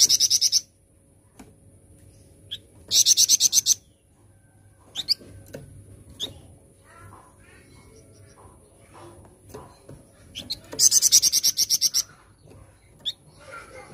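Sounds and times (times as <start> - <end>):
songbird rattling trills: 6.1 - 13.9.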